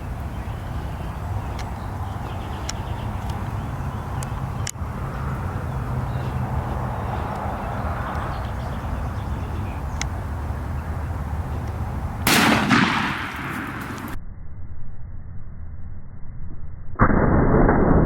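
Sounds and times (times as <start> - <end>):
low background rumble: 0.0 - 14.3
shotgun blast: 12.2 - 14.2.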